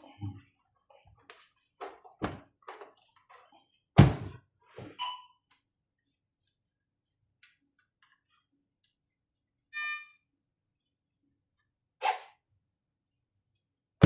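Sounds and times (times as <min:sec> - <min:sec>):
heavy thunk: 0:04.0 - 0:04.4.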